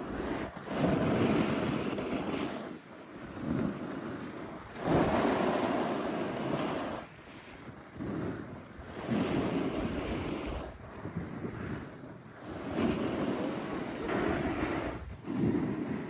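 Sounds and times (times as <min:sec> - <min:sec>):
wind on microphone: 0:00.0 - 0:16.0
snowboard carving through snow: 0:12.5 - 0:16.0.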